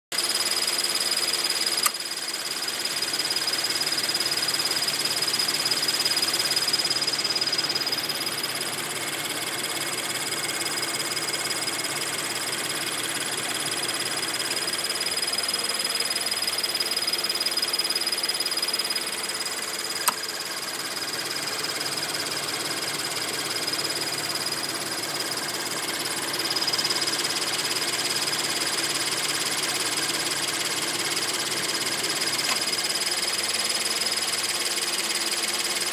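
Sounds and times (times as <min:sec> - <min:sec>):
sharp click: 0:01.7 - 0:02.1, 0:20.0 - 0:20.3, 0:32.4 - 0:32.7
car engine running: 0:02.5 - 0:34.6.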